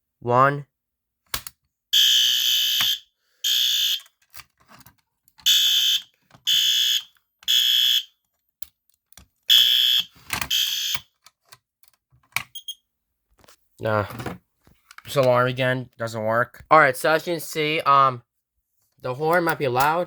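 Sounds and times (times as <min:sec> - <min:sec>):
fire alarm horn blasts: 0:02.0 - 0:04.0, 0:05.4 - 0:08.1, 0:09.5 - 0:11.0.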